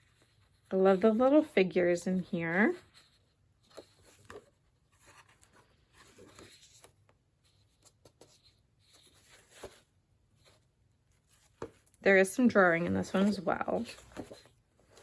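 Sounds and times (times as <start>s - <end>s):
book pages rustling: 0.0s - 15.0s
soft taps of pages: 11.4s - 12.0s.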